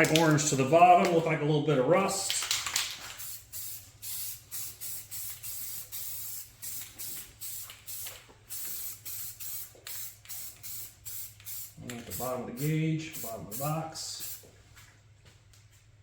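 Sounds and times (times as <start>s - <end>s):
spray paint can hissing: 3.0s - 14.5s.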